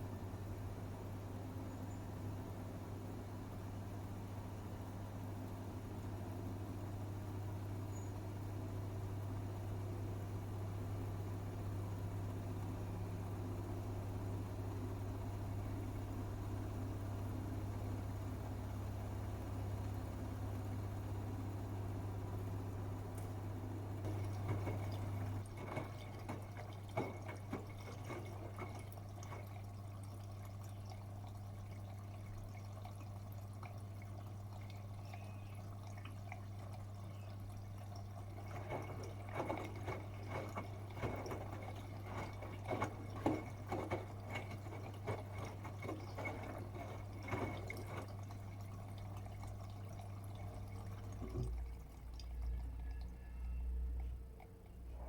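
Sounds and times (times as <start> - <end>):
steady low hum: 12.6 - 52.9
water sloshing in washing machine: 20.6 - 55.0.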